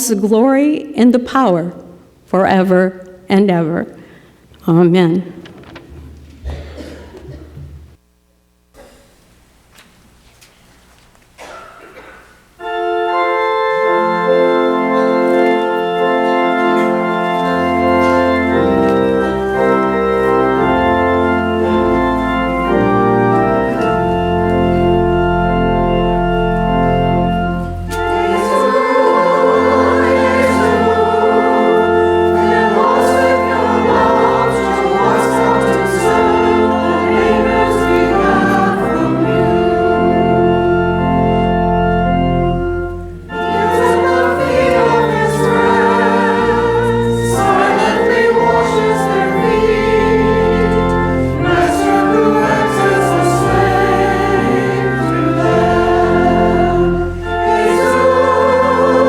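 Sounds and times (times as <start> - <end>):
organ playing low notes: 12.5 - 59.0
choir singing a hymn: 12.6 - 59.0.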